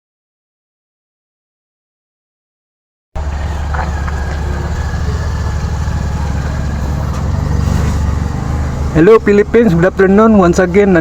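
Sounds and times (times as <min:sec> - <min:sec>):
low outdoor rumble: 0:03.2 - 0:11.0.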